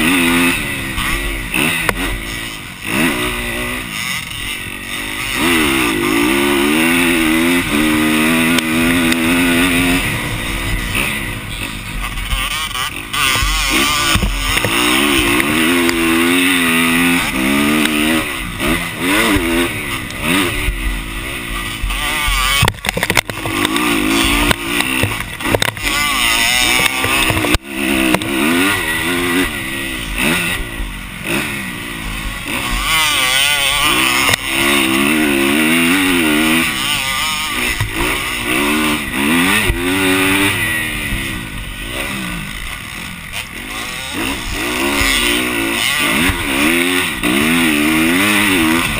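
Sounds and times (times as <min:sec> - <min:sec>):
dirt bike engine revving: 0:00.0 - 0:48.9
sharp knocks: 0:13.4 - 0:15.3.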